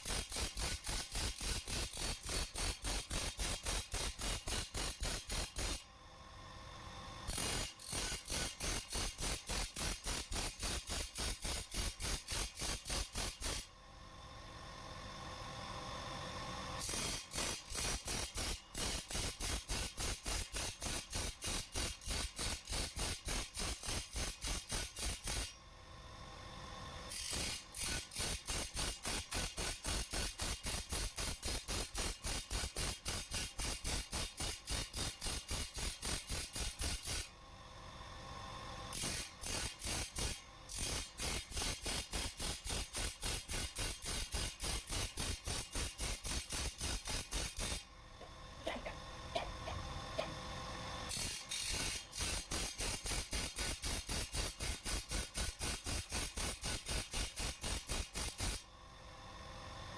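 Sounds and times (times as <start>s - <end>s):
steady hum: 47.7s - 51.2s.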